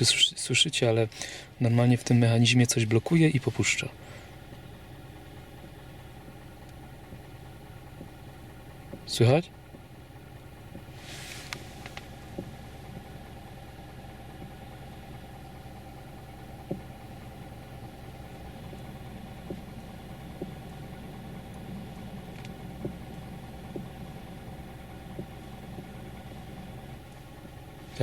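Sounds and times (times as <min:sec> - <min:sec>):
car engine idling: 0:00.0 - 0:28.0
steering column clicks: 0:18.2 - 0:28.0.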